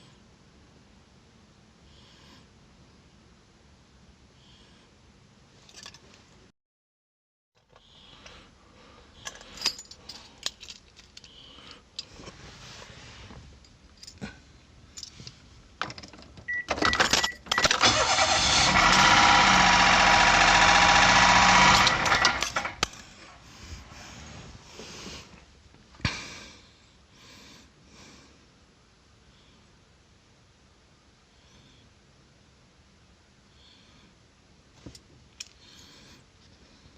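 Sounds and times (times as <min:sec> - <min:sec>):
keys jangling and clicking: 0:05.7 - 0:06.1, 0:09.2 - 0:12.1
car engine running loudly: 0:17.8 - 0:22.9.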